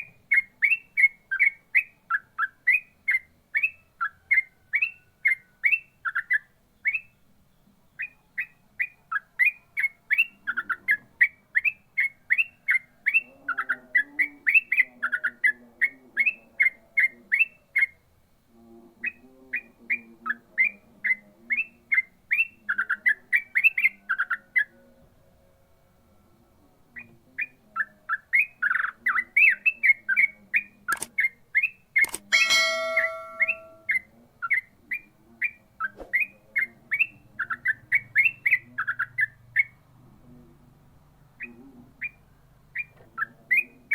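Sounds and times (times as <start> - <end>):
bird singing sharp rising notes: 32.4 - 34.0.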